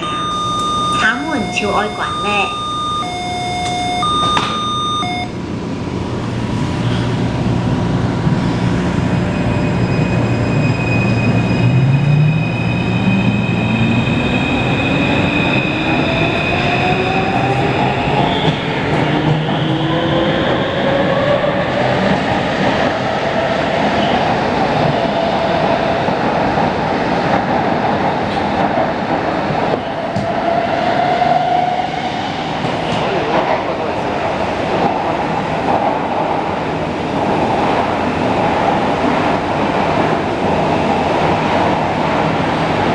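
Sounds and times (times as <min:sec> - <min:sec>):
high steady tones: 0:00.0 - 0:05.4
train inverter and motors whining: 0:00.0 - 0:26.5.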